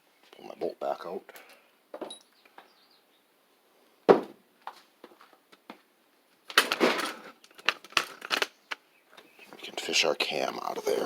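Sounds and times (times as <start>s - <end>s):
metal rattling and scraping: 6.6s - 8.5s.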